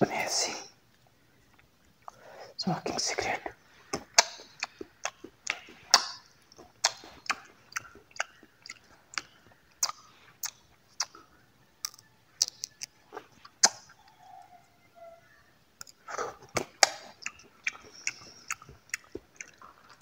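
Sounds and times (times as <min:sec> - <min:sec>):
chewing crunchy dry fruit: 0:03.2 - 0:14.2, 0:15.8 - 0:20.0.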